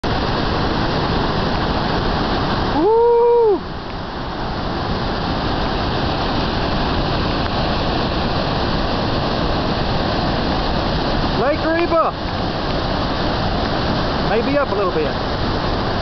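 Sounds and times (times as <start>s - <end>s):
floodwater rushing: 0.0s - 16.0s.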